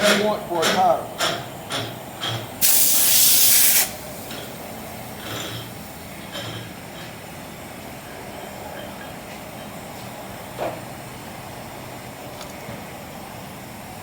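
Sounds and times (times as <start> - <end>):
compressed air hissing: 2.6 - 5.9.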